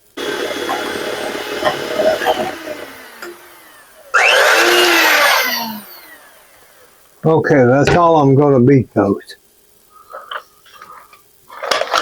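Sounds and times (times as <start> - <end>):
electric mixer whipping: 0.0 - 6.9.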